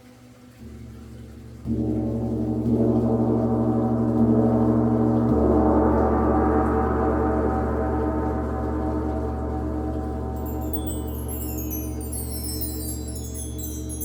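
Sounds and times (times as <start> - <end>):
gong ringing: 10.4 - 14.0.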